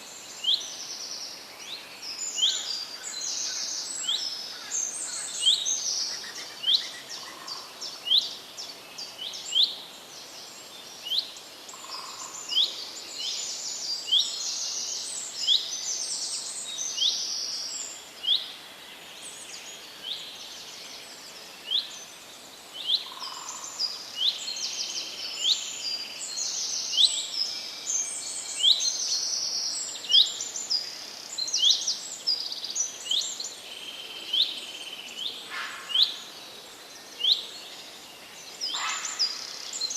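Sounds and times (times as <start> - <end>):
faint outdoor hiss: 0.0 - 39.9
wild birds chirping: 0.0 - 39.9.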